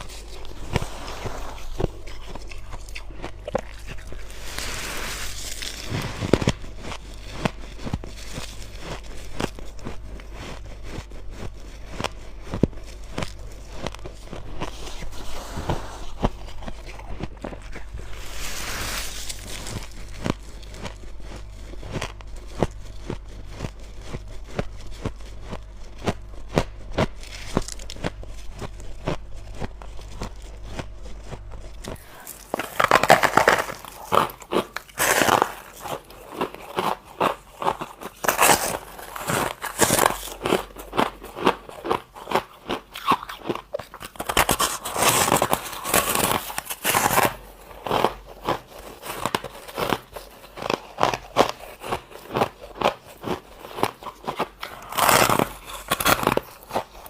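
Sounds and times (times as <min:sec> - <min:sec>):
chewing crunchy ice: 0:00.0 - 0:57.0
steady low hum: 0:00.0 - 0:57.0.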